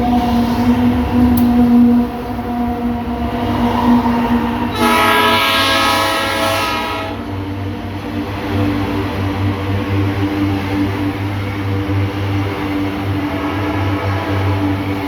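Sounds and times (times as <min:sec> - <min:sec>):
diesel locomotive drone: 0:00.0 - 0:15.0
train horn blast: 0:04.7 - 0:07.3, 0:13.2 - 0:15.0.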